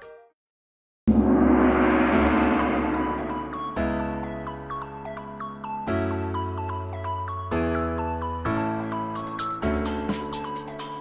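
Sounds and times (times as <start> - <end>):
keyboard background music: 4.0 - 11.0.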